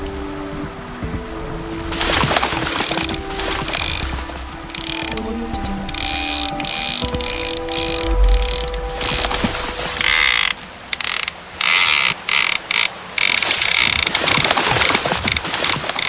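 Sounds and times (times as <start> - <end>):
high-pitched ratchet-like whir: 10.0 - 13.9.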